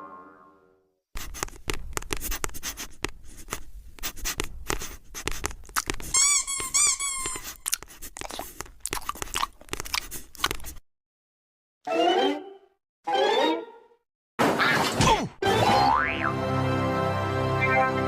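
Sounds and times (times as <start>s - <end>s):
cartoon crunching clicks: 4.4s - 10.8s
squeaky chirps: 6.2s - 7.7s.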